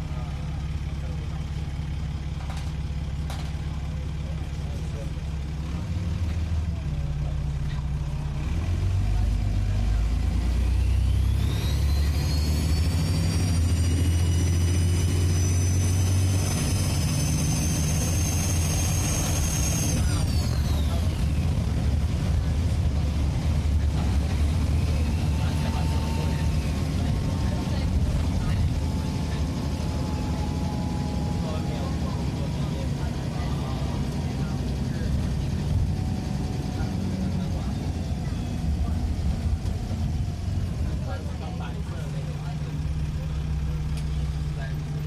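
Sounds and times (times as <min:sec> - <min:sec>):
bus diesel engine under load: 0:00.0 - 0:45.0
turbocharger whistle: 0:10.7 - 0:21.1.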